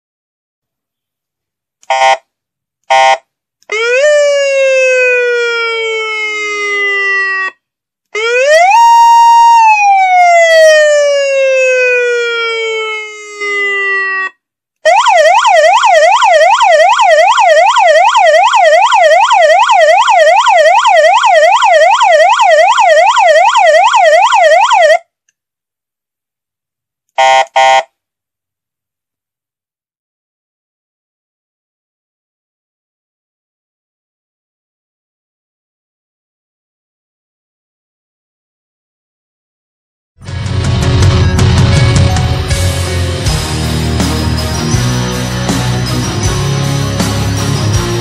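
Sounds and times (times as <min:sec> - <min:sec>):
motorcycle siren wailing and yelping: 0:03.7 - 0:07.6, 0:08.2 - 0:25.0.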